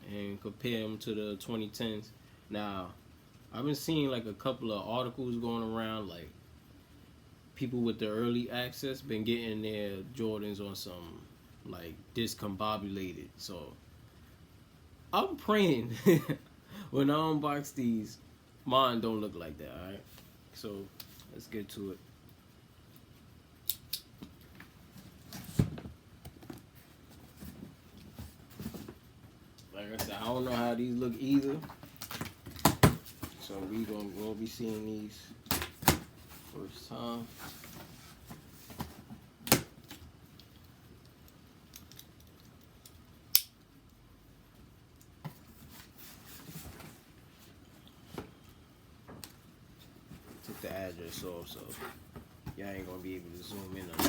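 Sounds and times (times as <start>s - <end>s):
sharp clicks and snaps: 40.4s - 43.6s.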